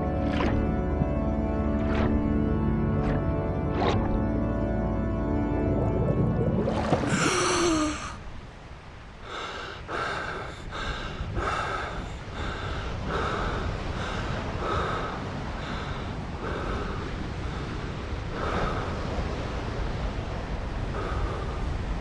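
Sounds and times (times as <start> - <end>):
person gasping for air: 7.1 - 8.2, 9.2 - 13.5
person panting heavily: 7.1 - 8.2, 9.2 - 17.7.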